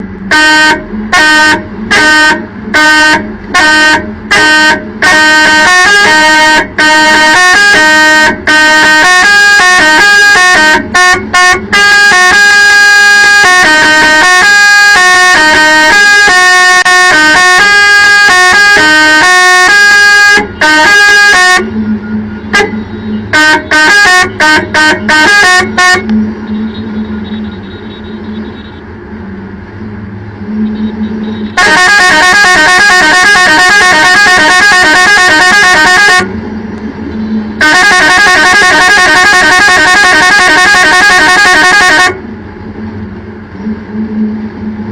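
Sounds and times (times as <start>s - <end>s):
musical air horn: 0.3s - 28.8s, 30.5s - 36.4s, 37.3s - 42.3s.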